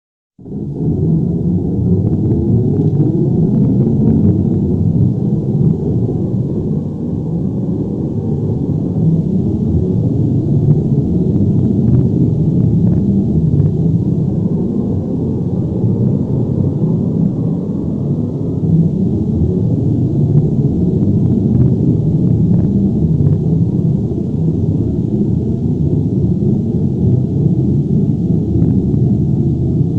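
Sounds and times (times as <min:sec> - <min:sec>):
deep continuous rumble: 0:00.4 - 0:29.9
faint scattered crackles: 0:02.0 - 0:04.6.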